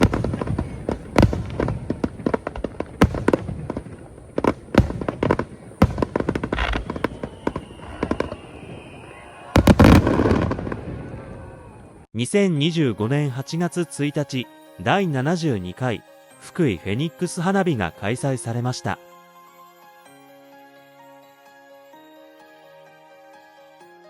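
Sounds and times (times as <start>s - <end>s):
fireworks bangs and crackles: 0.0s - 11.9s.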